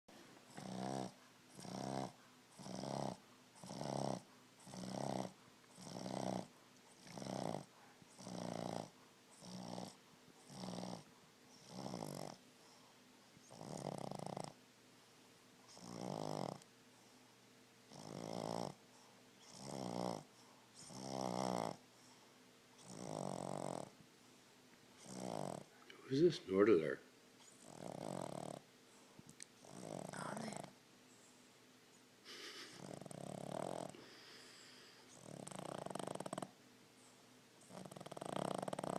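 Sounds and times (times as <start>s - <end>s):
dog snoring: 0.4s - 12.8s, 13.4s - 14.6s, 15.7s - 16.7s, 17.9s - 22.1s, 22.8s - 24.0s, 25.0s - 25.7s, 27.4s - 28.7s, 29.6s - 30.8s, 32.3s - 36.6s, 37.6s - 38.9s.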